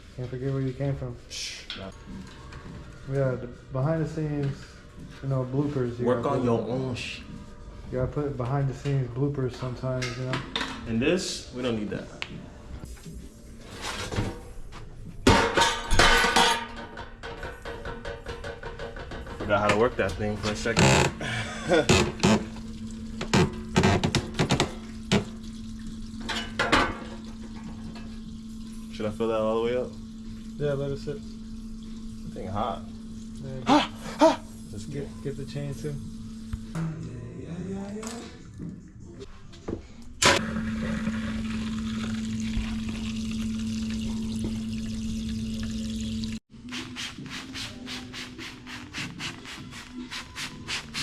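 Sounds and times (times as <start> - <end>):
machine humming: 40.2 - 46.4.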